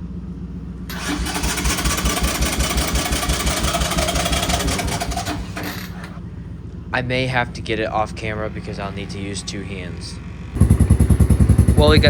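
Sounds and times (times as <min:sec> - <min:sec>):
engine cranking without starting: 0:00.9 - 0:06.3.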